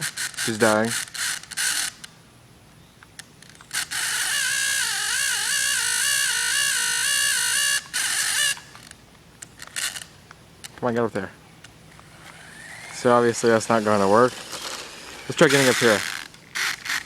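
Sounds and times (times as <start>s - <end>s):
toy car electric motor whining: 0.0s - 2.1s, 3.6s - 8.9s, 9.6s - 10.1s, 12.0s - 17.0s.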